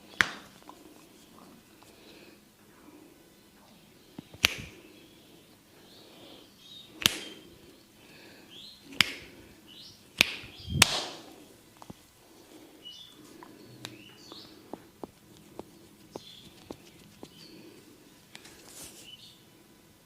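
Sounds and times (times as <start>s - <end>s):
faint birds chirping: 0.0s - 20.0s
sharp hand slaps: 0.2s - 0.5s, 4.3s - 4.8s, 7.0s - 7.4s, 8.9s - 9.4s, 10.2s - 11.3s.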